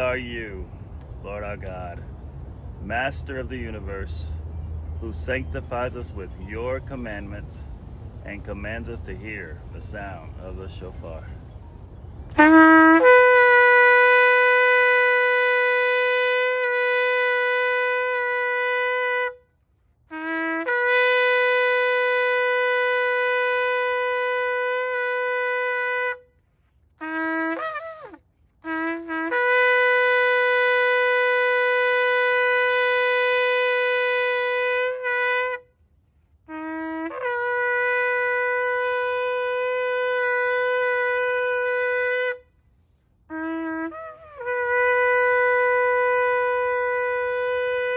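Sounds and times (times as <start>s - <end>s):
shofar blasts: 12.3s - 19.5s, 20.1s - 26.3s, 27.0s - 35.8s, 36.4s - 47.9s.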